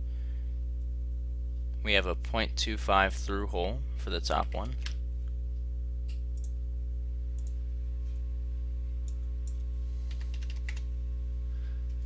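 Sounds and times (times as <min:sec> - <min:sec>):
low electrical hum: 0:00.0 - 0:12.0
keyboard keys tapping: 0:10.1 - 0:10.8.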